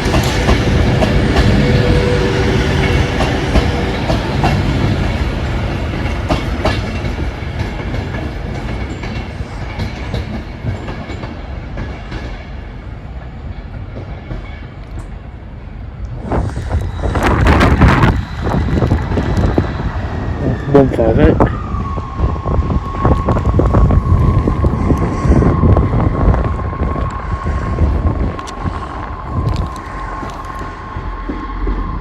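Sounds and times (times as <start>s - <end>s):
train wheels clicking on rails: 0.0s - 15.3s, 22.6s - 32.0s.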